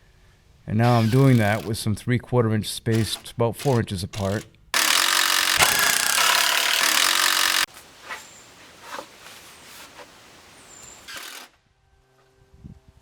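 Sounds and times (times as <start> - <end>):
impact driver driving screw into wood: 0.8 - 1.7, 2.9 - 7.7, 10.7 - 11.5.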